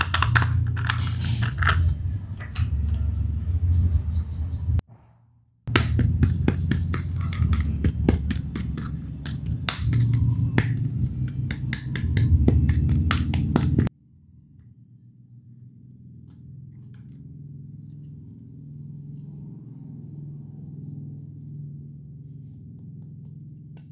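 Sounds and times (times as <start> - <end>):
plastic toy pieces clicking: 0.0 - 2.7
steady low hum: 0.0 - 4.8, 5.7 - 23.9.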